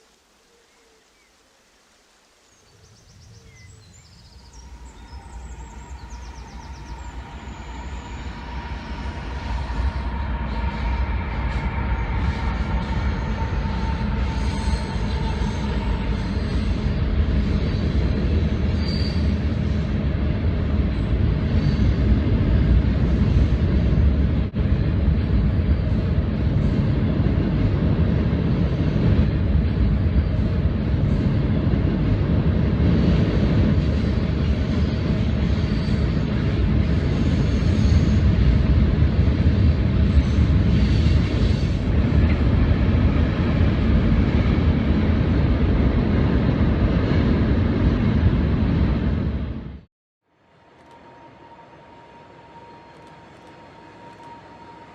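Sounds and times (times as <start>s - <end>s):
train rumbling: 3.0s - 54.9s
faint high squeals: 4.4s - 17.9s, 18.7s - 19.4s.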